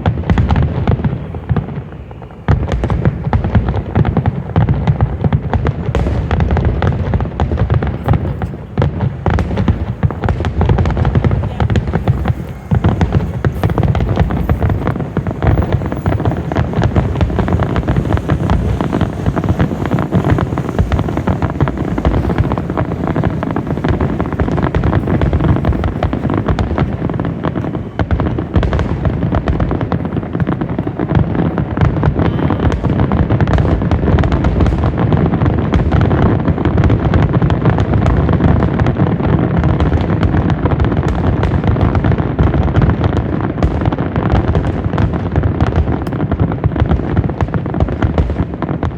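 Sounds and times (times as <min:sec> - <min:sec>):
fireworks bursting rapidly: 0:00.0 - 0:48.9.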